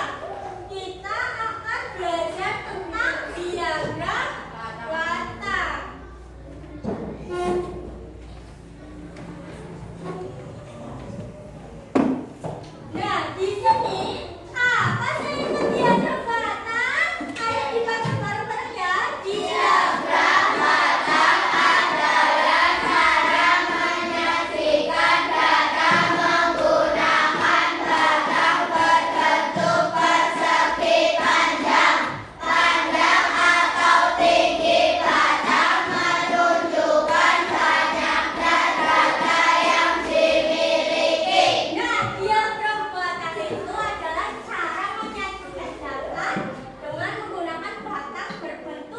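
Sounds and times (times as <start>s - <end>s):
children singing in unison: 19.3s - 41.8s.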